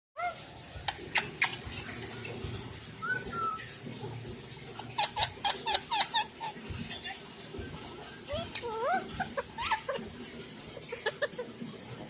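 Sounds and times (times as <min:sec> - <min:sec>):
parrot chirps: 0:00.2 - 0:02.4, 0:05.0 - 0:07.2
parrot whistle: 0:03.0 - 0:03.7
parrot squawks: 0:04.9 - 0:07.4.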